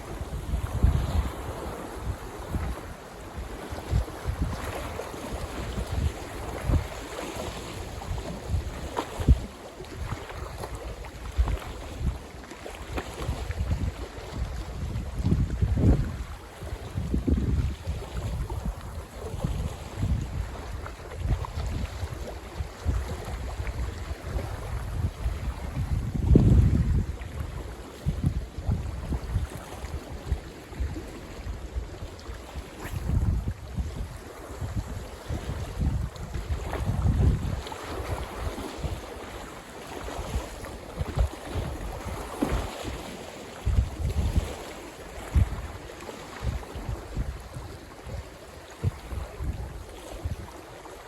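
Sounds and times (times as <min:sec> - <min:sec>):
gusty wind buffeting microphone: 0:00.0 - 0:12.2, 0:13.0 - 0:39.2, 0:40.0 - 0:50.6.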